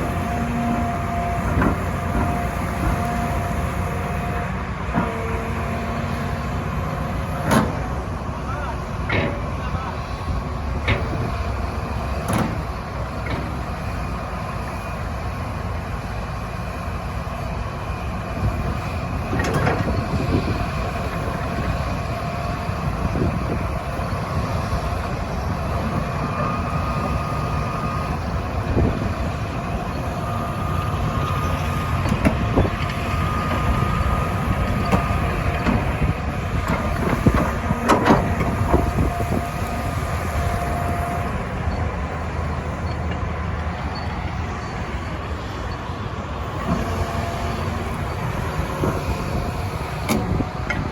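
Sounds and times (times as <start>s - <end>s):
excavator running: 0.0s - 50.9s.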